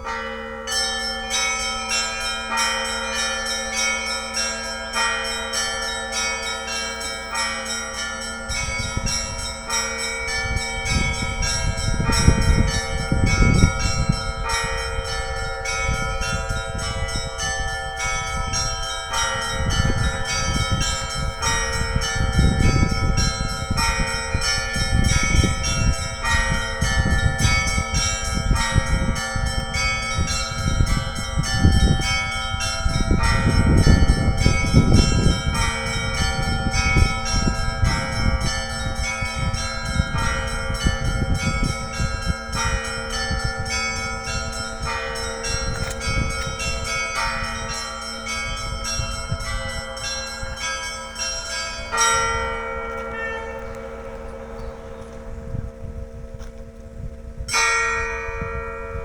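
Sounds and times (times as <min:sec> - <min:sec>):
church bells pealing: 0:00.0 - 0:59.0.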